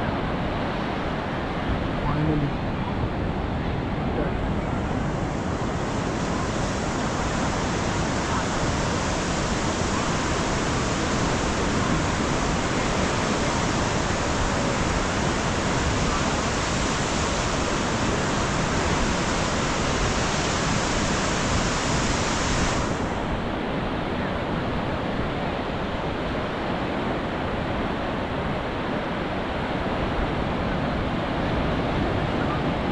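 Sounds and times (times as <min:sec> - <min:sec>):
sea surf breaking on beach: 0:00.0 - 0:32.9.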